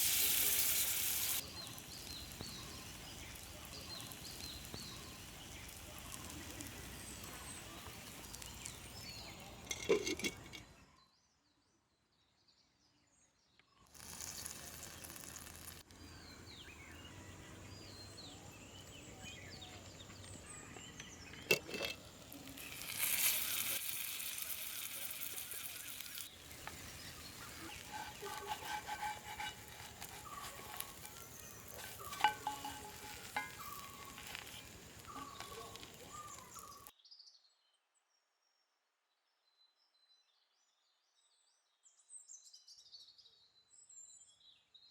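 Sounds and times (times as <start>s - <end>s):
steady hiss: 0.0s - 9.6s, 22.0s - 36.9s
birds chirping: 0.0s - 10.9s, 14.2s - 36.9s.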